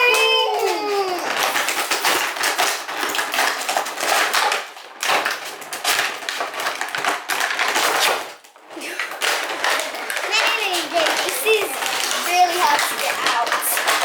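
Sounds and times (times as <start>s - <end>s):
packaging crinkling: 0.0s - 14.0s.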